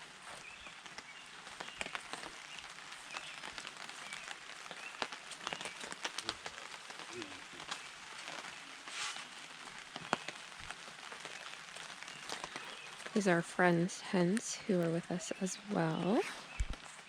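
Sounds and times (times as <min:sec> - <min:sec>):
rain falling: 0:00.0 - 0:17.0.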